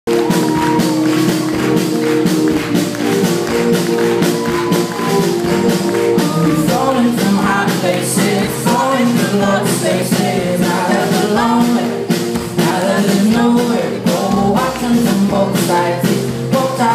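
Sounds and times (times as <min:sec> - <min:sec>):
live band music: 0:00.1 - 0:16.9
percussion hits: 0:00.1 - 0:16.9
person singing: 0:04.2 - 0:16.9.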